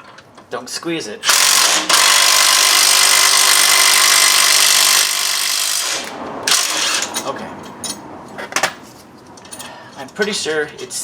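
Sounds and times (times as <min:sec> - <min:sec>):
impact wrench running: 0:01.2 - 0:07.3.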